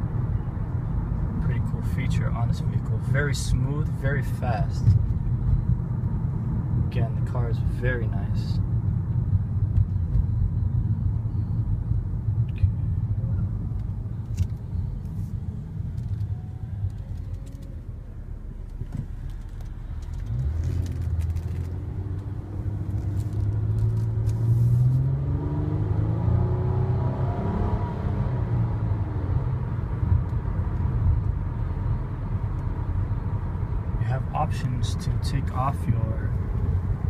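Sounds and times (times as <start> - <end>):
road rumble inside car: 0.0 - 37.0
car engine accelerating: 12.4 - 37.0.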